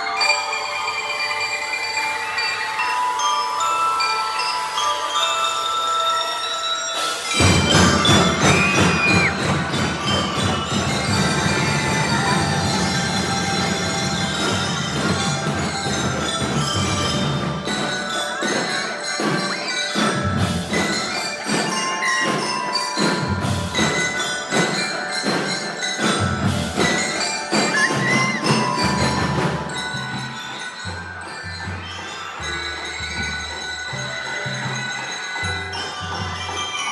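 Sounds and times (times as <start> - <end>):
bell lyres playing melody: 0.0 - 36.9
marching drums beat: 7.3 - 30.9.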